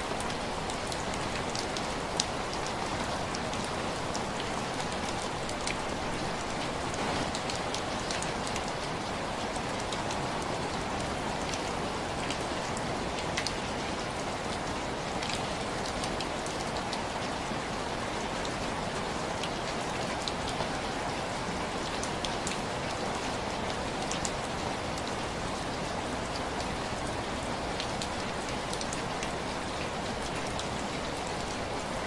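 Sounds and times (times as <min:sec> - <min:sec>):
heavy rain falling: 0:00.0 - 0:32.0
raindrop ticks: 0:00.2 - 0:08.8.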